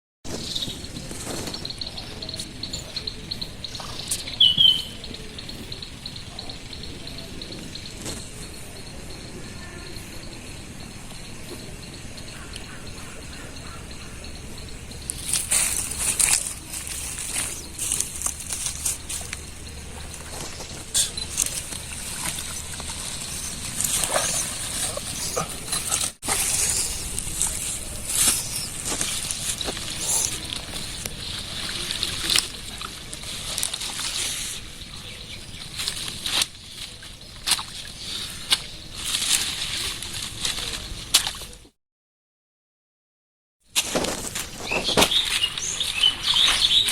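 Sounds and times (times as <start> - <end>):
bird chirps: 0.3 - 37.3, 44.4 - 46.9
insect chirping: 0.3 - 41.1
water splashing: 12.6 - 41.6.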